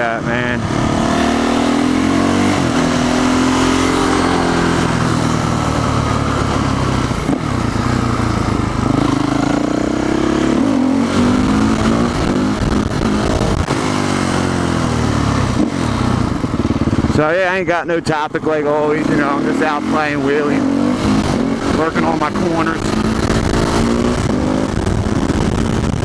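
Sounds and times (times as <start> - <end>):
motorcycle engine revving: 0.0 - 26.0
wind rush on microphone: 10.5 - 17.1, 20.9 - 26.0.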